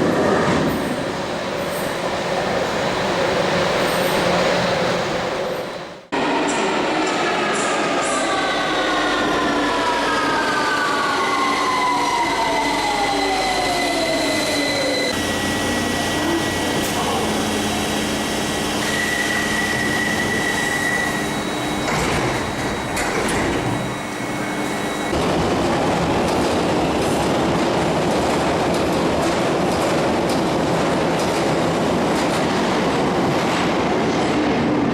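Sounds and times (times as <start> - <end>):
loud train rumble: 0.0 - 34.9
train clunks: 21.8 - 24.6.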